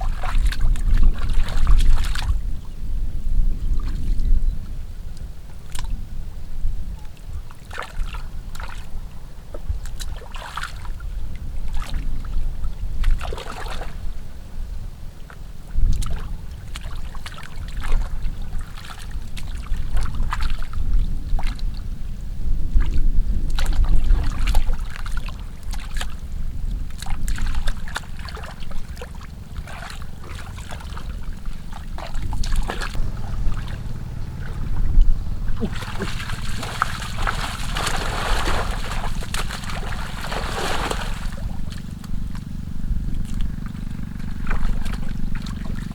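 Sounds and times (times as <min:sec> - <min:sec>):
muddy water sloshing: 0:00.0 - 0:02.7, 0:07.0 - 0:14.2, 0:15.2 - 0:21.9, 0:22.8 - 0:45.9
steady low rumble: 0:19.2 - 0:45.9.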